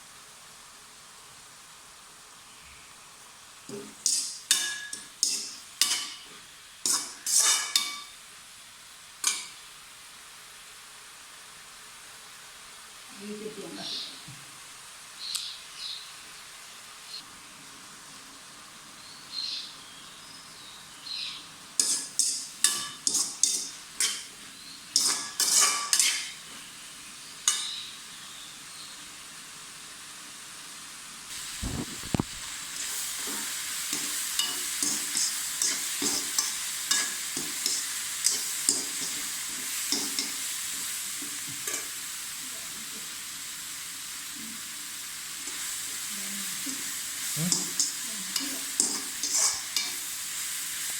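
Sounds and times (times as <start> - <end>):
pan sizzling: 0.0 - 50.9
spatula scraping a pan: 3.7 - 8.1, 21.8 - 26.7, 32.8 - 40.9, 47.4 - 50.1.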